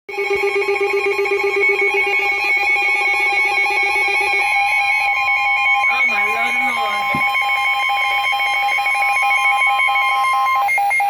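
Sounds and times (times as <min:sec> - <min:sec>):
steady alarm tone: 0:00.1 - 0:11.0
buzzy warbling alert tones: 0:05.8 - 0:07.5.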